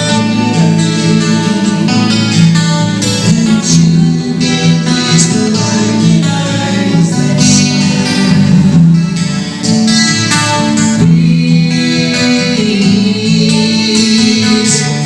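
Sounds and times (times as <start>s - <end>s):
instrumental music: 0.0s - 15.0s.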